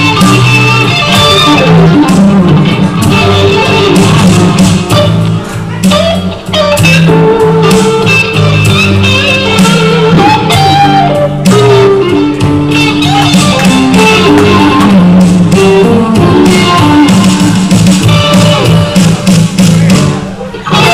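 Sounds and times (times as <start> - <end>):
bass notes: 0.0 - 20.9
electric guitar lead lines: 0.0 - 20.9
drum hits: 12.4 - 20.2.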